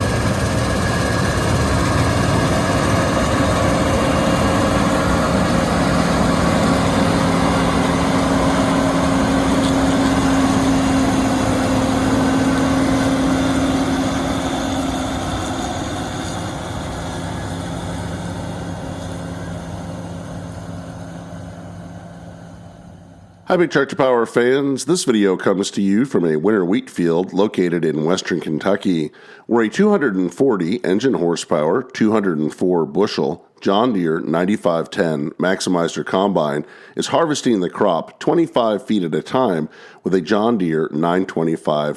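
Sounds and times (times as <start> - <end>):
combine harvester engine drone: 0.0 - 23.5.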